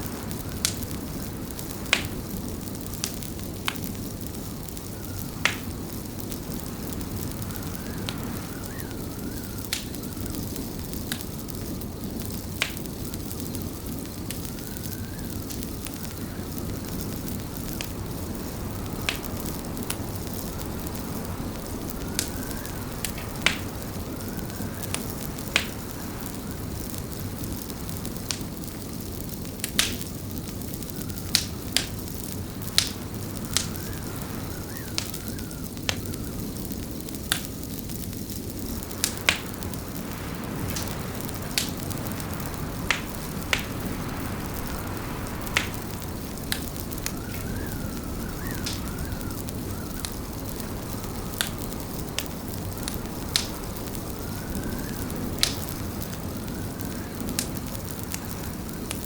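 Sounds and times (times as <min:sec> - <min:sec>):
wood fire crackling: 0:00.0 - 0:59.0
faint wavering whistle: 0:07.4 - 0:10.3, 0:14.6 - 0:16.5, 0:46.8 - 0:50.5, 0:54.0 - 0:55.4.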